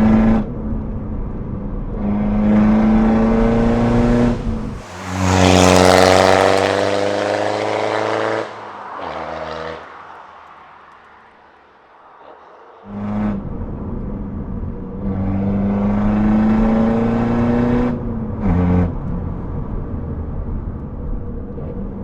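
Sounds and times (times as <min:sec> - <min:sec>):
diesel car engine accelerating: 0:00.0 - 0:11.4, 0:12.2 - 0:22.0
exhaust rush: 0:00.0 - 0:22.0.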